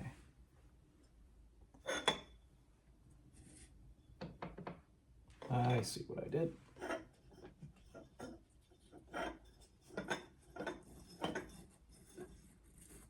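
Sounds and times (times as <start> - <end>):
light clinks and rubs: 6.7 - 13.0.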